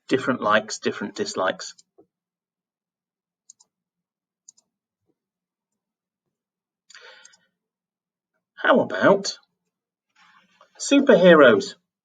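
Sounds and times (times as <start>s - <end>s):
computer mouse clicks: 3.5s - 3.7s, 4.4s - 4.7s, 7.2s - 7.5s.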